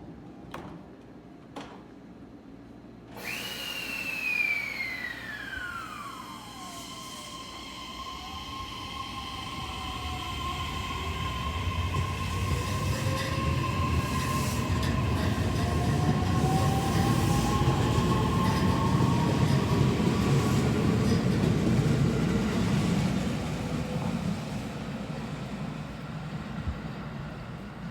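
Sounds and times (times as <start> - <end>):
electric train motor whine: 3.2 - 21.2
wheels rumbling on rail: 8.6 - 27.9.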